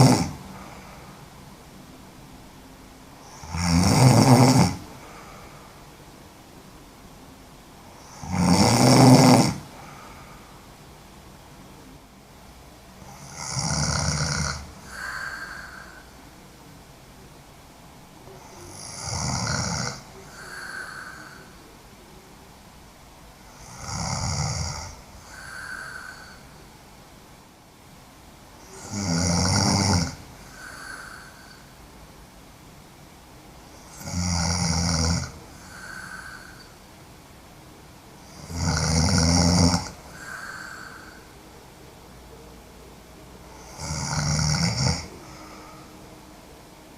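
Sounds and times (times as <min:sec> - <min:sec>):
woman snoring: 0:00.0 - 0:01.2, 0:03.2 - 0:05.5, 0:08.0 - 0:10.2, 0:13.0 - 0:16.2, 0:18.4 - 0:21.7, 0:23.4 - 0:26.7, 0:28.6 - 0:31.8, 0:33.7 - 0:36.8, 0:38.2 - 0:41.4, 0:43.5 - 0:46.0
soft breath: 0:00.4 - 0:01.5, 0:04.8 - 0:06.0, 0:09.7 - 0:11.0, 0:14.6 - 0:16.8, 0:19.8 - 0:22.3, 0:24.8 - 0:26.9, 0:30.2 - 0:31.9, 0:35.3 - 0:37.0, 0:39.9 - 0:43.9, 0:45.0 - 0:46.9.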